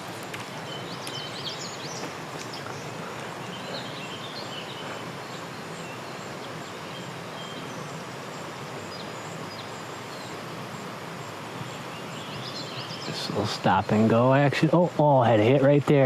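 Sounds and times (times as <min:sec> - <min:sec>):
water running over rocks: 0:00.0 - 0:16.0
faint bird chirps: 0:00.5 - 0:10.5, 0:11.3 - 0:14.1.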